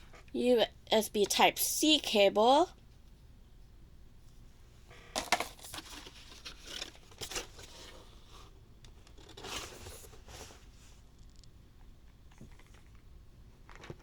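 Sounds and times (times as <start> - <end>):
packaging rustling: 5.2 - 8.0.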